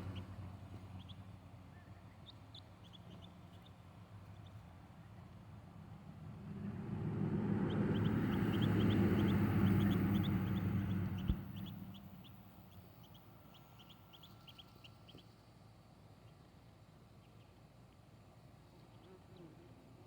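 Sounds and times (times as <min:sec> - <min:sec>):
duckling peeping: 0:00.0 - 0:04.6, 0:07.7 - 0:15.4
low hum with rushing noise: 0:00.0 - 0:15.1.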